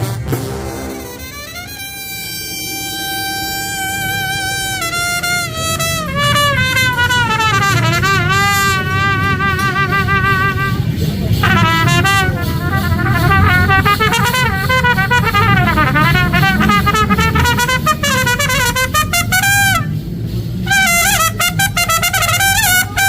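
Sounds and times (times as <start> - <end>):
brass band playing: 0.0 - 23.0
trumpets with vibrato: 0.0 - 23.0.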